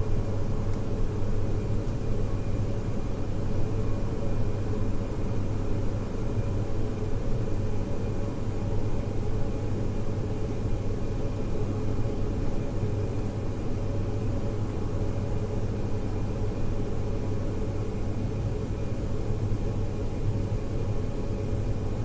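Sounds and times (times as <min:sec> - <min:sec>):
low rumbling ambient noise: 0:00.0 - 0:03.0.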